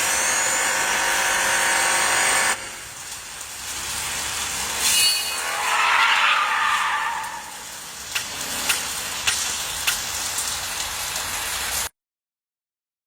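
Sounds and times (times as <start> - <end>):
car tyres sliding with hiss: 0.0 - 11.9
sharp clicks: 8.1 - 10.1.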